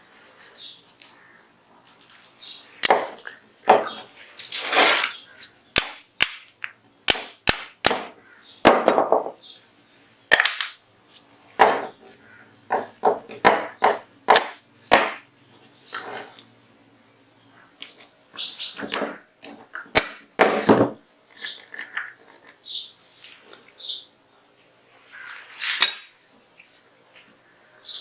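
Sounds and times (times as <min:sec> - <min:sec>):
pistol parts clicking: 0:05.8 - 0:08.1.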